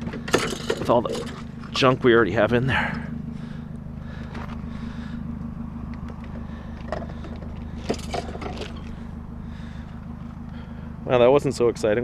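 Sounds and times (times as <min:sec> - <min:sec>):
knocks and clunks: 0:00.0 - 0:01.8, 0:05.9 - 0:09.0
car engine idling: 0:00.0 - 0:12.0.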